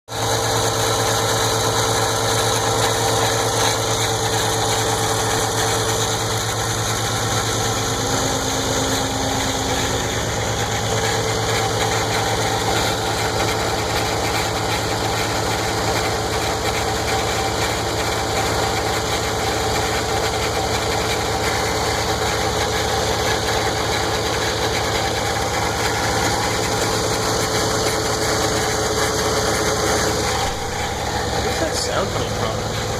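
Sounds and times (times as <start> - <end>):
car engine idling: 0.1 - 32.9
rubbery stretching engine noise: 2.3 - 32.9
steady tone: 30.3 - 32.9.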